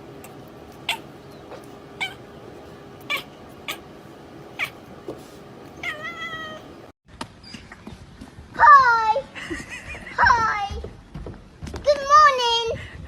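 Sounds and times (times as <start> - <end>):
cat crying and meowing: 0.8 - 2.2, 3.0 - 3.9, 4.6 - 4.8, 5.8 - 6.8.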